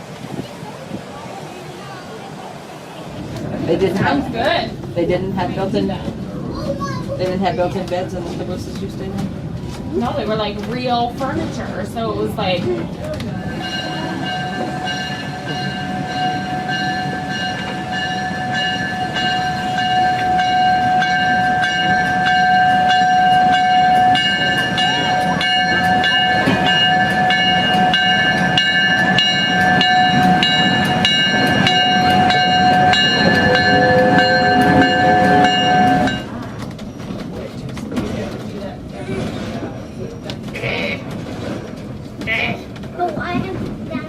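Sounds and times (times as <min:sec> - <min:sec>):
wheels clicking over rail joints: 0:03.0 - 0:44.0
train wheels squealing: 0:39.2 - 0:40.4.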